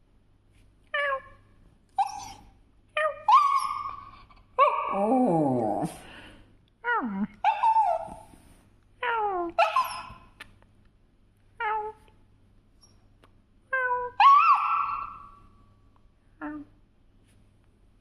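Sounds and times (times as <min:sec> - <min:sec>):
dog whining: 0:02.0 - 0:06.0, 0:07.4 - 0:08.3, 0:09.2 - 0:10.4, 0:13.8 - 0:15.4.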